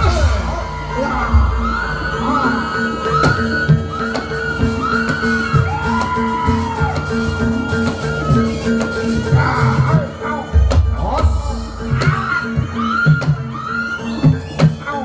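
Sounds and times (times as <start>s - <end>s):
low drum: 0.0s - 2.1s.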